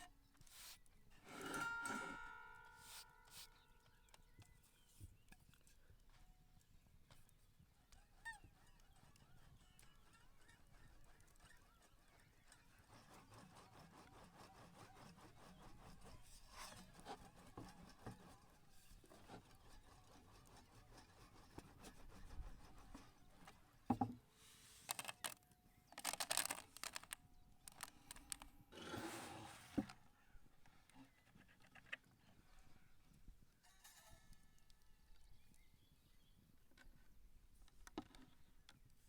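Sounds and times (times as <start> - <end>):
faint handling noise: 23.2 - 35.7
scraping: 26.0 - 30.1.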